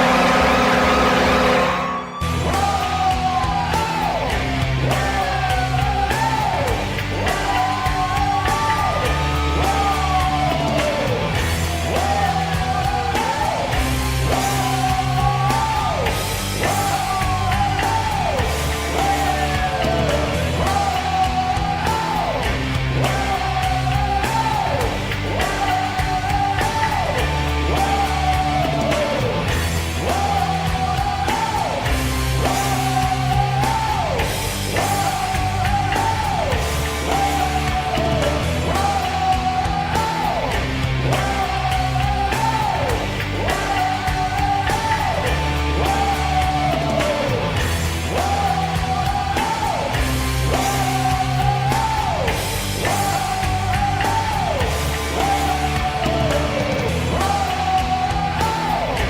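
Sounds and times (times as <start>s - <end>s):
hard rock song with singing: 0.0s - 59.0s
steady bass: 0.0s - 59.0s.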